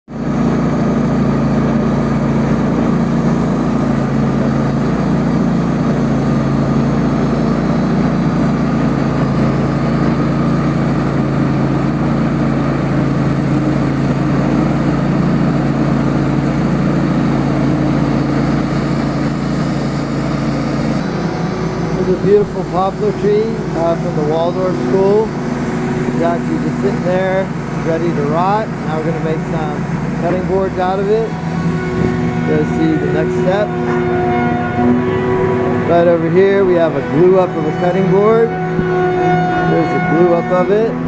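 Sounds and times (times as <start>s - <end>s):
sawmill engine running: 0.1s - 41.0s.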